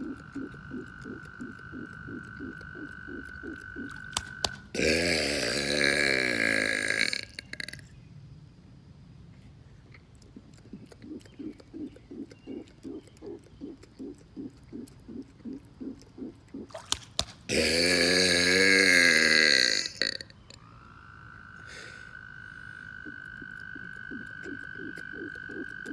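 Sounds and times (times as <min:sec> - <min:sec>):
faint rhythmic pulsing: 0:00.0 - 0:05.0, 0:09.7 - 0:17.7, 0:20.3 - 0:25.9
man burping: 0:04.7 - 0:07.8, 0:17.5 - 0:20.3.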